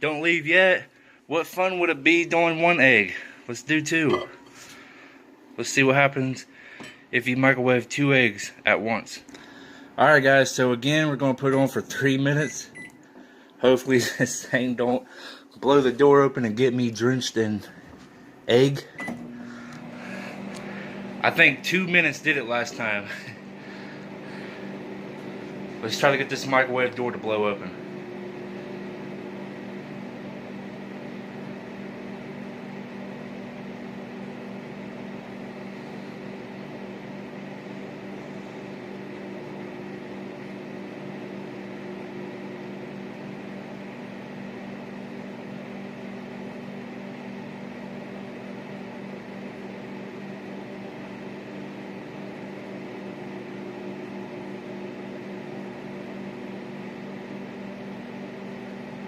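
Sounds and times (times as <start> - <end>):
microwave oven humming: 0.0 - 59.0.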